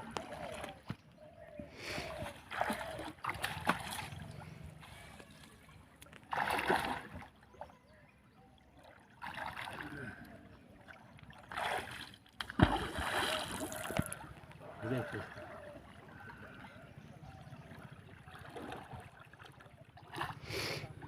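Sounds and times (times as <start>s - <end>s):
river water splashing: 2.0s - 7.8s, 8.7s - 21.0s
faint voices: 13.4s - 19.1s.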